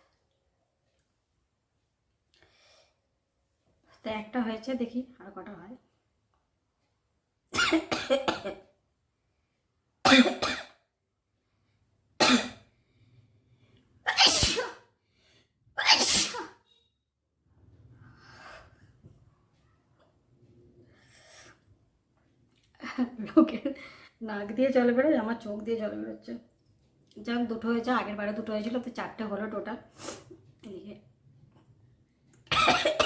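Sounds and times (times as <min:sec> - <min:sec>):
woman sneezing: 0:14.1 - 0:14.9, 0:15.8 - 0:16.6.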